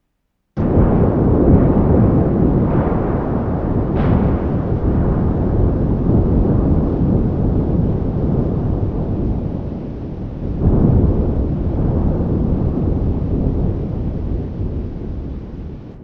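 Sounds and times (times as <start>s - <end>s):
deep monster rumbling: 0.6s - 16.0s.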